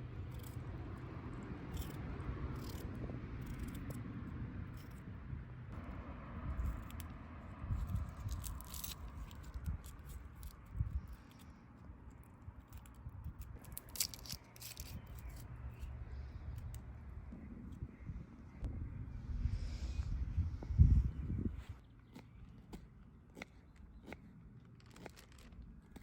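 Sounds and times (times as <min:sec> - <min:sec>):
low rumble: 0:12.0 - 0:21.9.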